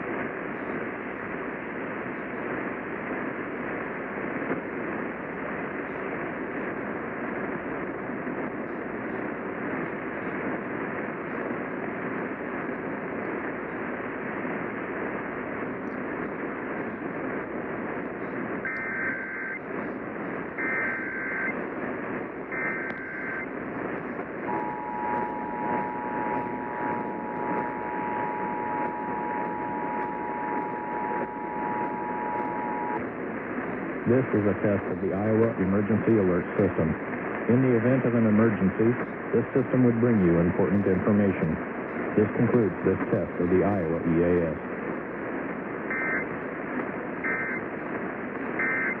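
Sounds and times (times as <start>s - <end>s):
radio static hiss: 0.0s - 49.0s
warbling data bursts: 18.6s - 19.6s, 20.6s - 21.6s, 22.5s - 33.0s
steady two-tone attention signal: 18.7s - 19.6s, 20.6s - 21.6s, 22.5s - 23.5s, 24.4s - 33.0s, 45.9s - 46.3s, 47.2s - 47.6s, 48.6s - 49.0s.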